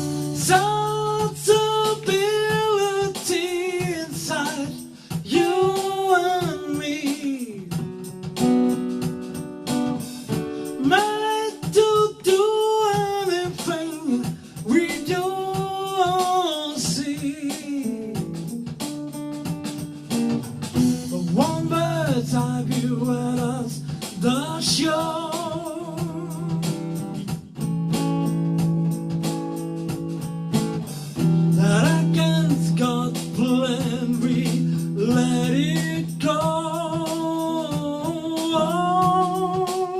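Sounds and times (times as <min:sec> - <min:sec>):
person singing: 0:00.0 - 0:08.0, 0:10.3 - 0:18.6, 0:21.0 - 0:27.2, 0:31.5 - 0:39.9
plucked guitar: 0:00.0 - 0:39.9.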